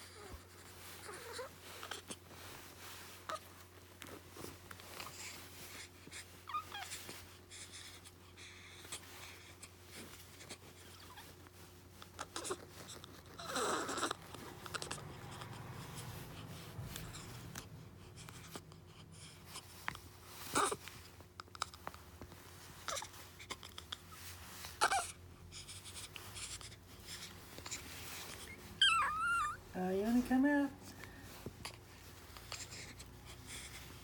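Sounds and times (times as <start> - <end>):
low steady hum: 0.0 - 34.0
baby squealing: 28.8 - 29.6.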